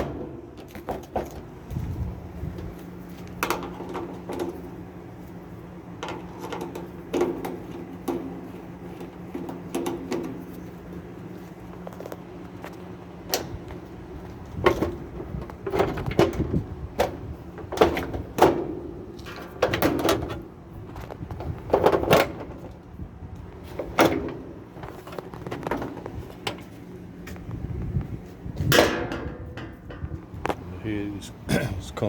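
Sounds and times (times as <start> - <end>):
washing machine parts knocking and rattling: 0.0 - 1.5, 3.4 - 4.7, 6.0 - 10.4, 14.5 - 22.8, 28.6 - 30.6
steady low hum: 0.0 - 32.0.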